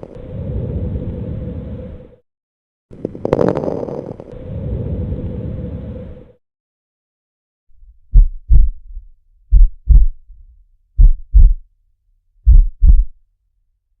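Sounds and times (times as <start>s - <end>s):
heartbeat thumps: 8.0s - 11.6s, 12.4s - 13.2s.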